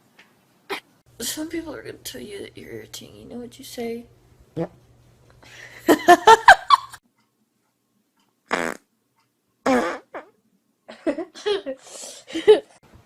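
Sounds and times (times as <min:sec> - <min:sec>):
farting: 0:08.5 - 0:08.9, 0:09.6 - 0:10.4.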